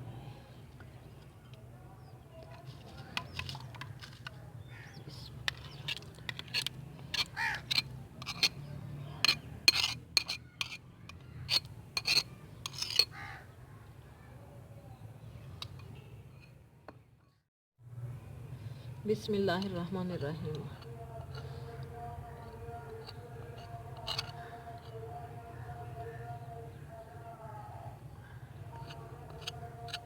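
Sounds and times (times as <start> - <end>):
spoon scraping a bowl: 2.5 - 4.3, 4.9 - 13.2, 19.6 - 26.2, 28.3 - 30.0.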